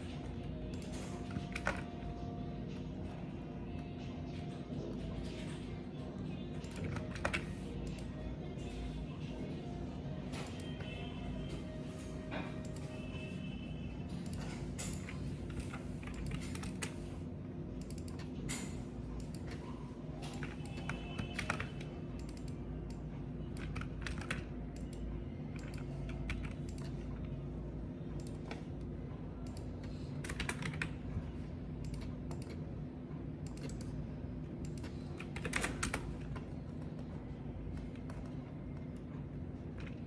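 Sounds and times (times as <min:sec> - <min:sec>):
steady low hum: 0:00.0 - 0:40.0
typing on keyboard: 0:00.1 - 0:02.2, 0:06.5 - 0:08.2, 0:14.0 - 0:27.4, 0:29.4 - 0:32.7, 0:33.4 - 0:34.0, 0:34.6 - 0:40.0.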